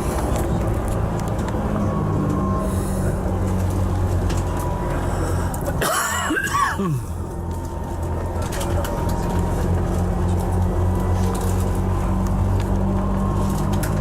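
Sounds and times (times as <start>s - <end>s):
bus engine hum and road rumble: 0.0s - 14.0s.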